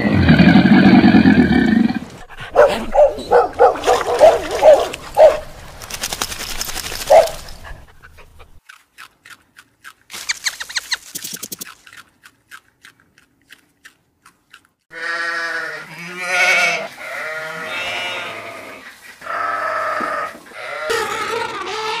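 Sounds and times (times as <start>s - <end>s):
bleat-like animal calls: 14.9s - 22.0s.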